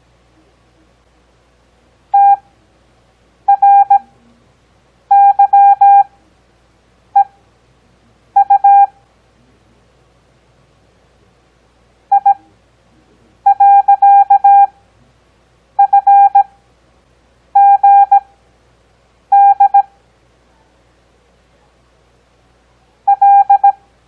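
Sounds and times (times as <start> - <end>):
morse code beeps: 2.2 - 2.4, 3.5 - 4.1, 5.1 - 6.1, 8.4 - 8.9, 12.1 - 12.4, 13.5 - 14.7, 15.8 - 16.5, 17.6 - 18.2, 19.3 - 19.9, 23.1 - 23.8.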